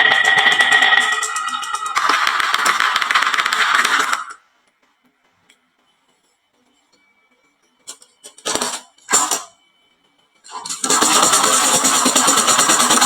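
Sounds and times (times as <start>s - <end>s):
background music: 0.0s - 4.4s
marbles rattling on wooden run: 0.0s - 4.4s.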